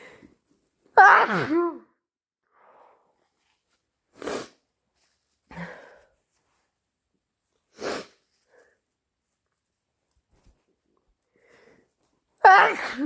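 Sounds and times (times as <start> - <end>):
wet sniffles through congested nose: 4.1 - 4.7, 7.7 - 8.6.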